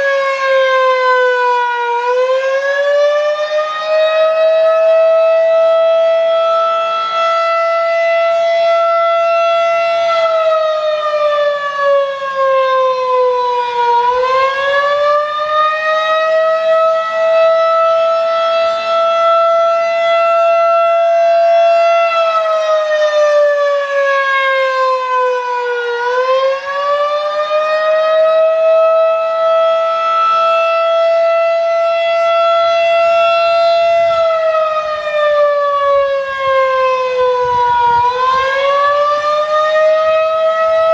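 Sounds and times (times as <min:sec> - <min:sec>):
warning siren tone: 0:00.0 - 0:40.9.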